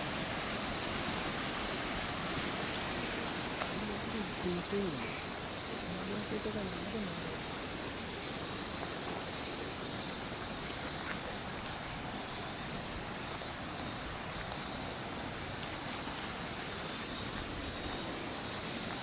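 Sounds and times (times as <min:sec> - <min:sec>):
high insect drone: 0:00.0 - 0:19.0
stream water rushing: 0:00.0 - 0:19.0
faint ticks: 0:10.2 - 0:12.0.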